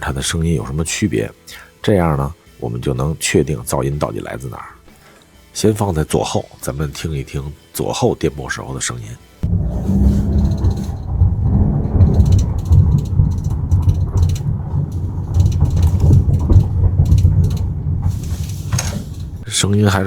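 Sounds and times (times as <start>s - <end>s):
plastic trim clicking and rattling: 9.4s - 19.5s
car body rumbling over bumps: 9.4s - 20.0s.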